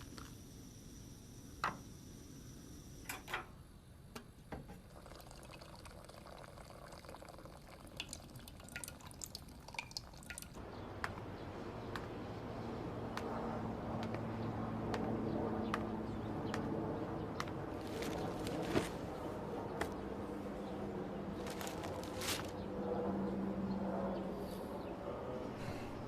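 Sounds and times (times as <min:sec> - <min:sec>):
liquid dripping: 0:04.9 - 0:10.6.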